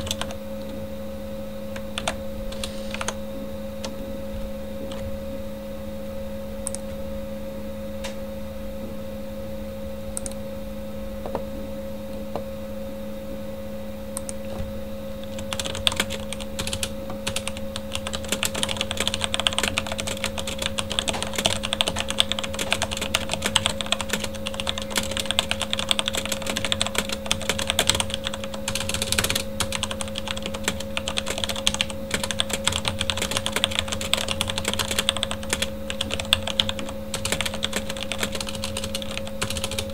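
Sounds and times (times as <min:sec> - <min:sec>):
mechanical keyboard typing: 0:00.0 - 0:00.4, 0:01.8 - 0:03.2, 0:15.2 - 0:39.9
computer fan humming: 0:00.0 - 0:39.9.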